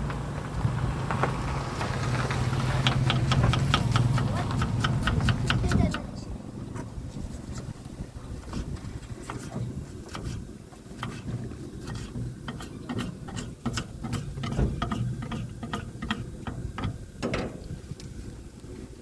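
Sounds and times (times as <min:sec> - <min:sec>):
steady low rumble: 0:00.0 - 0:19.0
metal utensils clicking on griddle: 0:02.7 - 0:06.0, 0:11.0 - 0:17.8.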